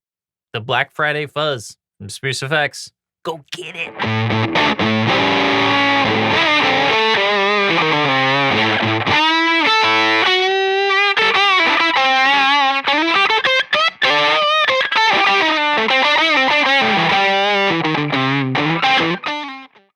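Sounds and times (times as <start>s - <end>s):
fuzz electric guitar lead: 3.9s - 19.8s.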